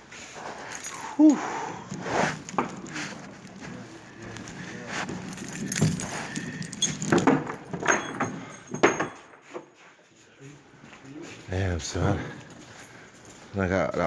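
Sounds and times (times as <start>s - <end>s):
small metal objects clinking: 0.6s - 3.6s, 4.4s - 9.4s.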